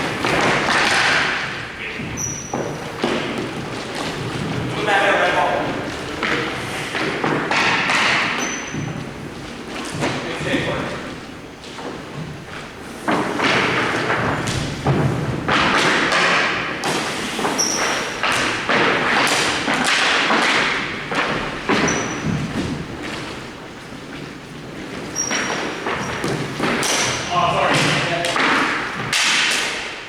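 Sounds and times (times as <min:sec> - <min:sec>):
hockey sticks knocking: 0:00.0 - 0:30.0.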